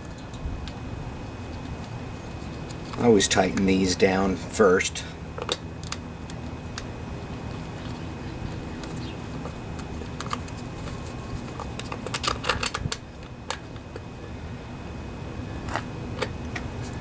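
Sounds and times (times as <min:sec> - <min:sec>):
steady low hum: 0:00.0 - 0:17.0
wrench clicking on metal parts: 0:11.8 - 0:13.6.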